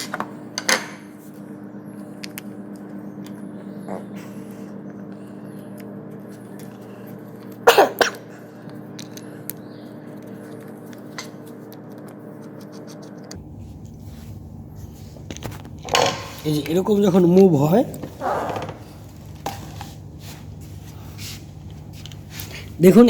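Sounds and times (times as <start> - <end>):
steady low hum: 0.0 - 23.0
person coughing: 7.6 - 8.4.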